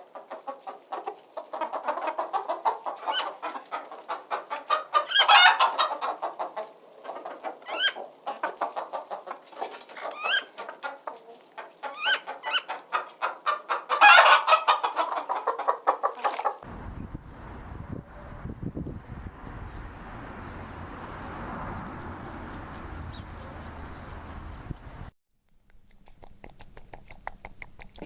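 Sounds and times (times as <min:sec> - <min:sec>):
chickens clucking: 0:00.0 - 0:25.1
low rumbling noise: 0:16.7 - 0:25.1.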